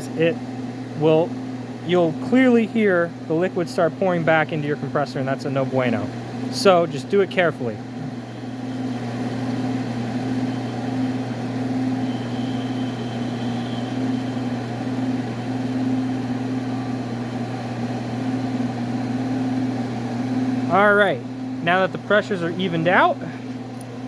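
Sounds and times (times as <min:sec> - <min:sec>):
condensing unit humming: 0:00.0 - 0:24.0
faint thin whistle: 0:11.8 - 0:14.6.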